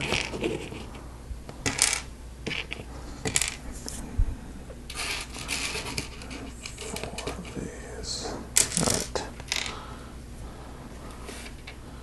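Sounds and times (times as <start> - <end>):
plastic pieces clicking and clattering: 8.6 - 9.8.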